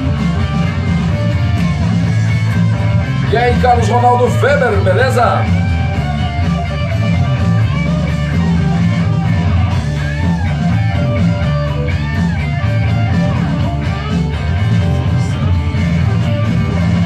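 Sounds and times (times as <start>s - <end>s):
rock song with guitars: 0.0s - 17.0s.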